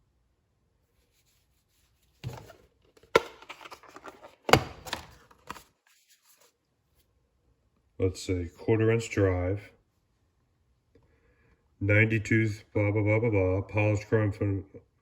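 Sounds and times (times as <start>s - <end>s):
packaging rustling: 2.2s - 6.5s.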